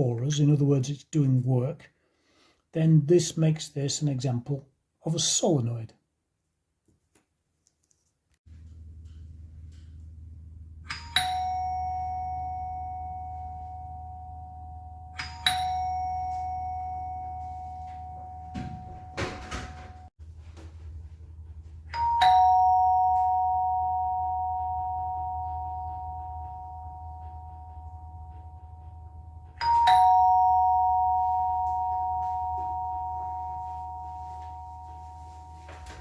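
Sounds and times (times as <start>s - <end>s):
ding-dong doorbell chime: 10.8s - 20.1s, 21.9s - 36.0s.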